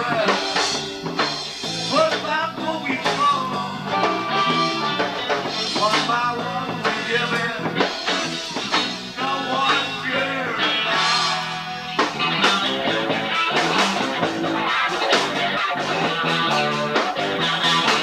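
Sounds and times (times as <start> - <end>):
bass: 0.0 - 18.0
drums: 0.0 - 18.0
electric guitar: 0.0 - 18.0.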